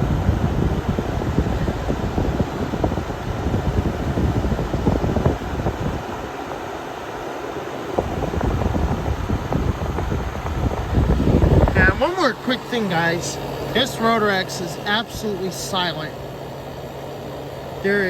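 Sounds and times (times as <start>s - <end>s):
wind buffeting on microphone: 0.0s - 13.8s
air conditioner fan blowing: 0.0s - 18.0s.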